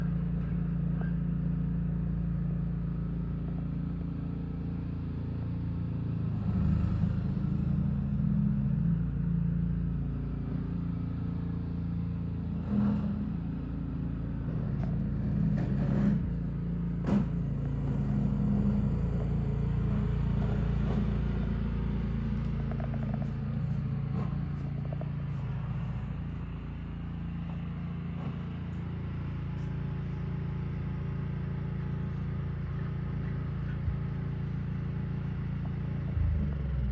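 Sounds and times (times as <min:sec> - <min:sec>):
engine running: 0:00.0 - 0:36.9
knocks and clatters: 0:22.4 - 0:25.4.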